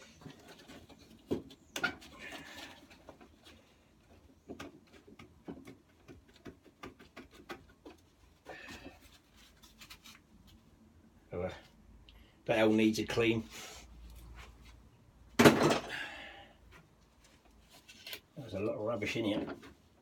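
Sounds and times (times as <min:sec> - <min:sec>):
light clicks and knocks of hand work: 0:00.0 - 0:10.6.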